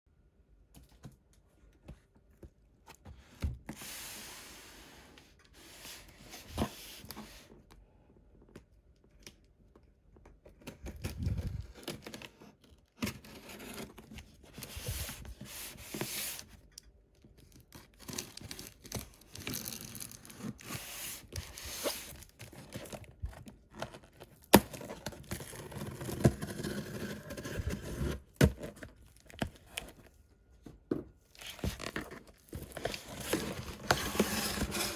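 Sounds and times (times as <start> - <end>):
packaging tearing and crinkling: 17.7 - 30.1.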